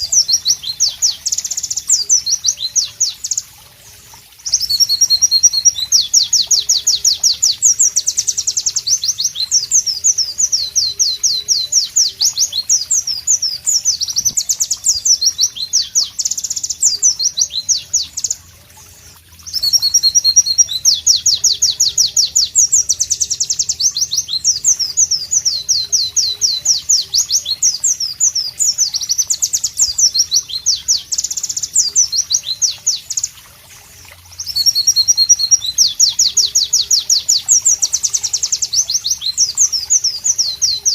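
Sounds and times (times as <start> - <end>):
bird chattering song: 0.0 - 3.5, 4.4 - 33.4, 34.3 - 40.9.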